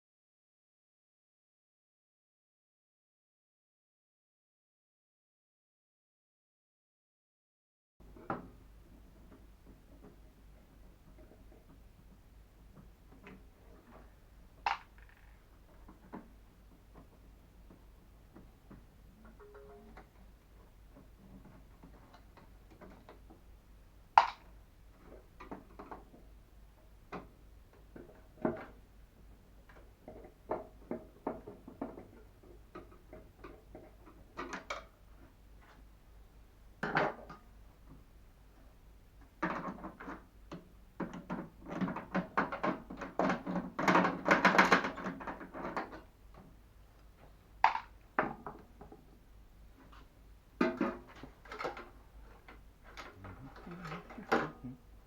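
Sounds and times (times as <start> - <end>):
knocks and clatter of parts: 8.1 - 23.4, 27.1 - 28.8, 29.6 - 35.8, 39.2 - 54.8.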